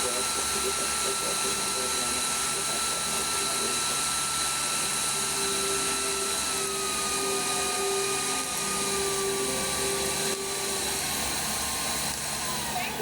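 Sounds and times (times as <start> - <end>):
turboprop engine whine and roar: 0.0 - 13.0.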